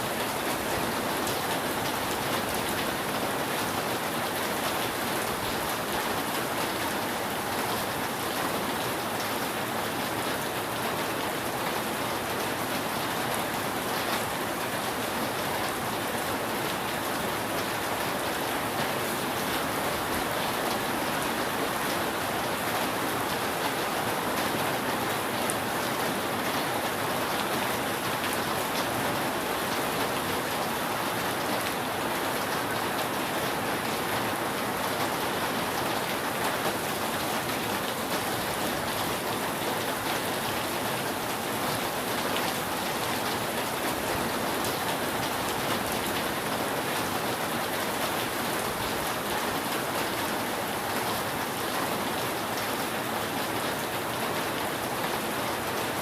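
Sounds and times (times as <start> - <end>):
rain falling on a roof: 0.0 - 56.0.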